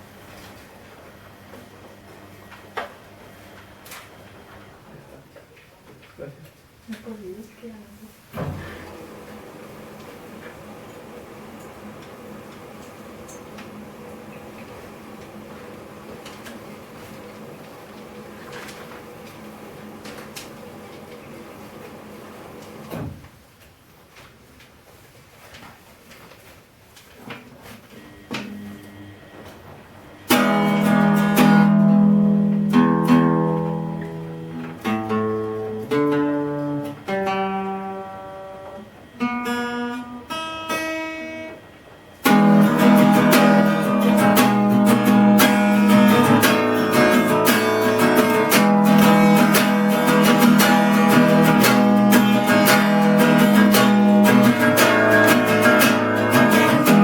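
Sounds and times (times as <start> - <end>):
acoustic guitar playing: 8.6 - 22.8, 30.2 - 57.0.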